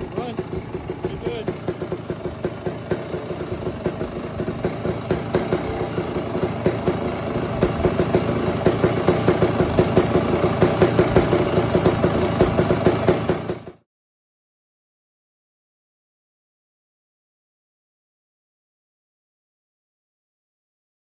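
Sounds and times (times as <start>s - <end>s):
two-stroke engine running: 0.0s - 13.8s.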